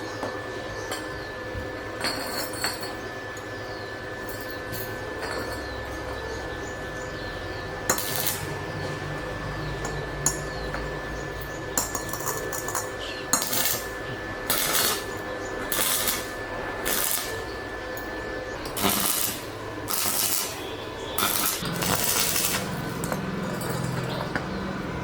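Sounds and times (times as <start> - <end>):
steady background hum: 0.0 - 25.0
metal objects clinking: 2.0 - 3.0, 4.3 - 5.8, 7.9 - 8.5, 11.8 - 24.6
sharp metal clanks: 11.8 - 17.5, 18.7 - 24.6.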